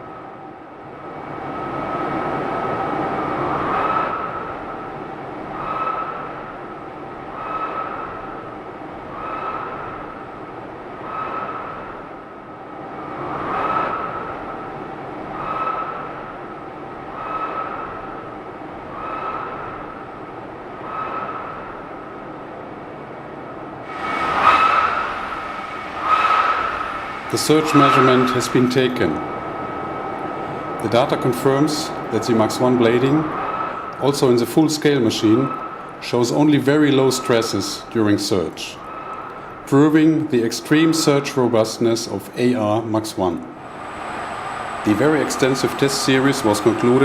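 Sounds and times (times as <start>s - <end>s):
rhythmic rushing air swell: 0.0s - 47.0s
air compressor whine: 23.8s - 34.1s, 43.5s - 47.0s.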